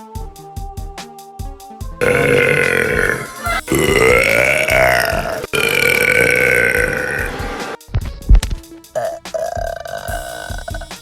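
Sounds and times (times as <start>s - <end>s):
music with a beat: 0.0s - 11.0s
woman burping: 2.0s - 7.3s.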